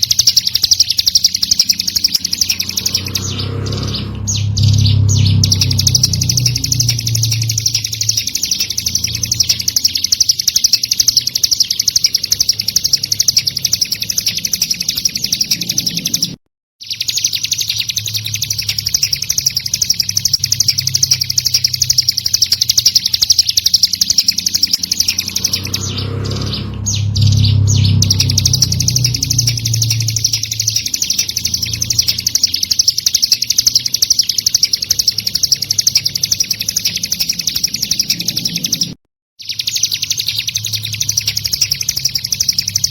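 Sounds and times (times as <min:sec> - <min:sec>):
low hum: 0:00.0 - 0:16.4, 0:17.8 - 0:33.0
bird singing high chirps: 0:00.0 - 0:42.9.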